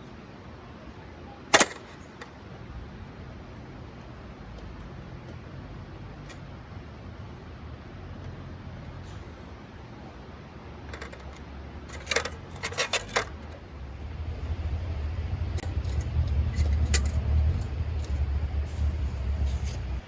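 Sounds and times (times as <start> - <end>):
steady low rumble: 2.5 - 10.3, 12.5 - 20.0.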